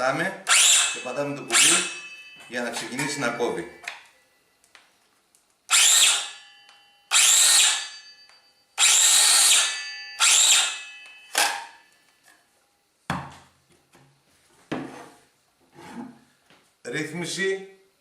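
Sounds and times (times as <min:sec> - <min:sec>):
circular saw motor whining: 0:00.4 - 0:03.6, 0:05.7 - 0:06.5, 0:07.1 - 0:08.1, 0:08.8 - 0:11.4.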